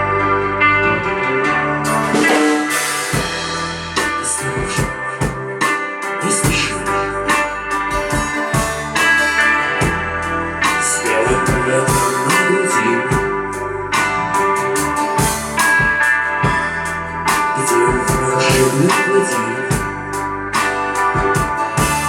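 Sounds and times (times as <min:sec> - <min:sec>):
bass line: 0:00.0 - 0:22.0
electric guitar: 0:00.0 - 0:22.0
keyboard: 0:00.0 - 0:22.0
drum beat: 0:02.3 - 0:12.5, 0:14.5 - 0:19.0, 0:19.7 - 0:22.0.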